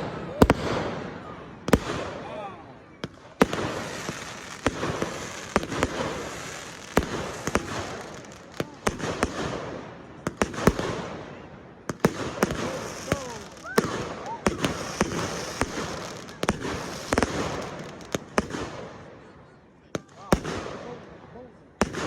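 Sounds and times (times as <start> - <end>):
firework bangs: 0.0 - 2.3, 3.0 - 19.2, 20.0 - 21.0, 21.8 - 22.0
crackling hiss: 3.0 - 9.4, 11.9 - 18.5.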